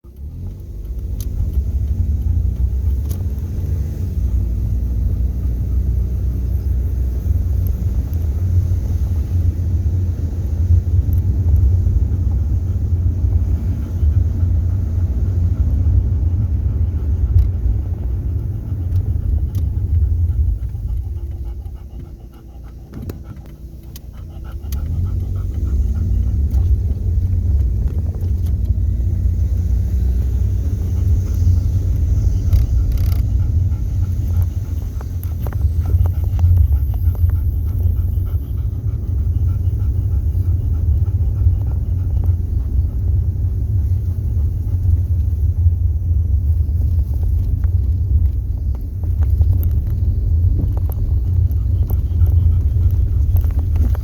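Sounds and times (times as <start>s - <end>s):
motor vehicle engine running: 0.0s - 54.0s.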